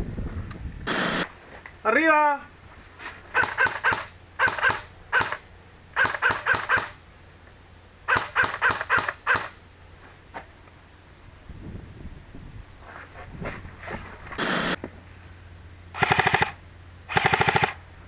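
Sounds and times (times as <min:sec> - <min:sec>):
airsoft rifle firing bursts: 0:03.3 - 0:07.0, 0:08.1 - 0:09.6, 0:16.0 - 0:17.8.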